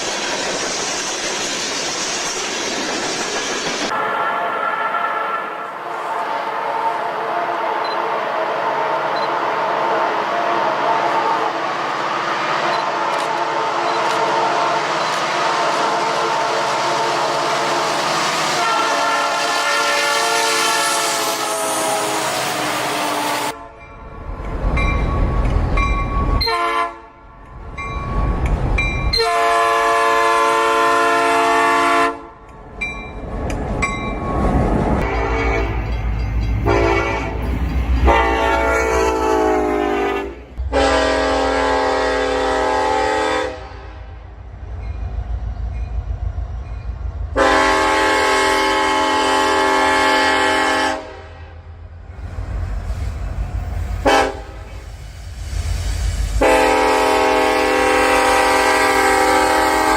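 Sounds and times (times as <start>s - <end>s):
low rumble of train: 0.0s - 59.9s
locomotive air horn blasts: 3.9s - 11.7s, 12.8s - 17.6s, 18.5s - 23.8s, 26.4s - 27.3s, 29.2s - 32.4s, 35.0s - 35.8s, 36.6s - 37.4s, 38.0s - 44.2s, 47.4s - 51.6s, 54.0s - 54.8s, 56.4s - 59.9s.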